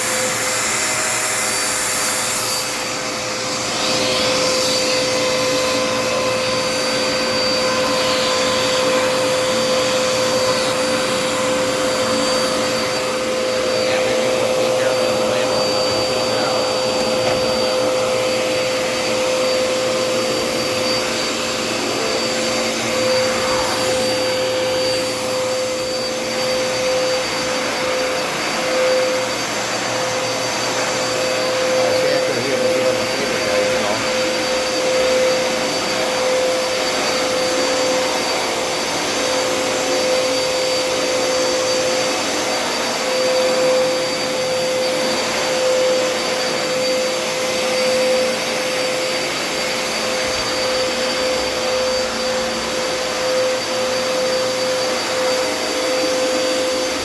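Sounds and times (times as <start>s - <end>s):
vacuum cleaner running: 0.0s - 57.0s.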